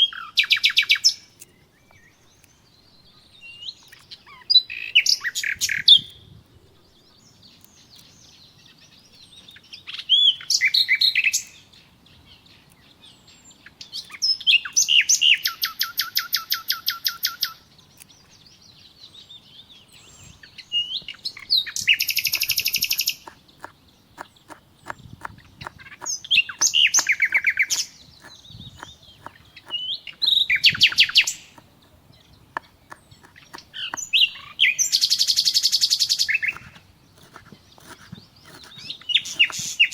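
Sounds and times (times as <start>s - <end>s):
songbird trilling: 19.6s - 39.9s.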